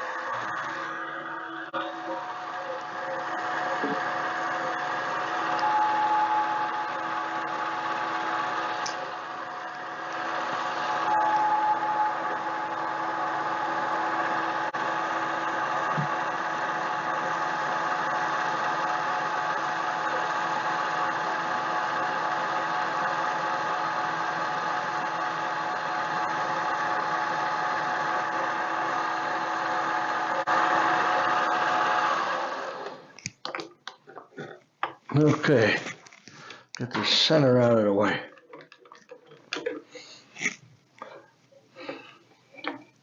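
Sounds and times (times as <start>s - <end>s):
lathe motor humming: 0.0s - 33.1s.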